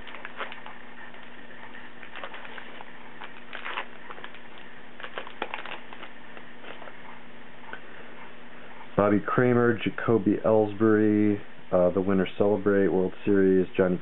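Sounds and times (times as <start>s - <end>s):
faint low hum: 0.0s - 14.0s
cards being flipped through: 2.0s - 7.0s.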